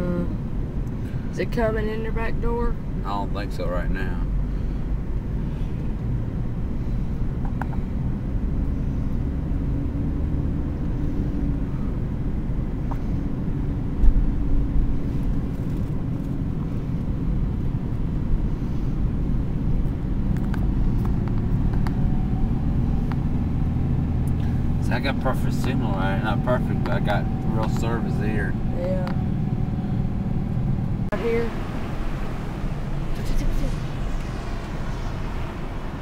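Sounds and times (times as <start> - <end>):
car driving rumble from inside: 0.0 - 36.0.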